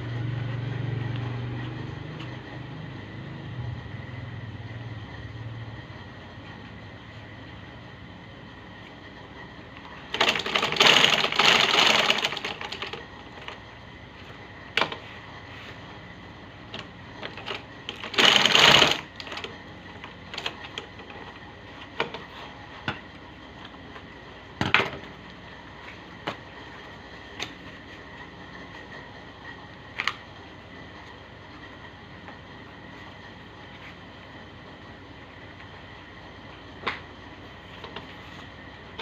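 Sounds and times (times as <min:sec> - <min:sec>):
sewing machine stitching: 0:10.1 - 0:13.6, 0:17.3 - 0:19.5.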